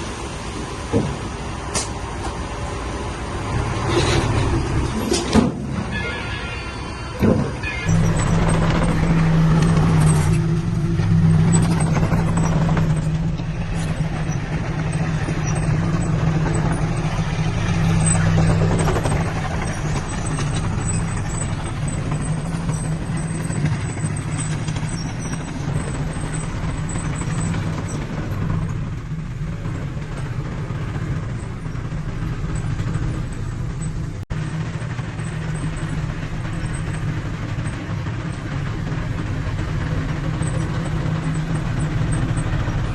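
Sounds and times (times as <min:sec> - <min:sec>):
heavy diesel engine running: 0:00.0 - 0:42.9.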